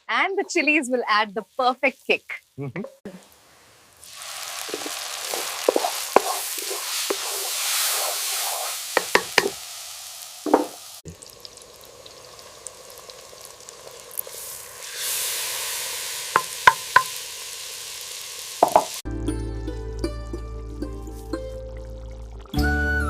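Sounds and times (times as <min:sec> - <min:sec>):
paste sizzling in oil: 0:03.2 - 0:19.0
spatula clacking against pan: 0:09.0 - 0:09.6
music: 0:19.1 - 0:23.0.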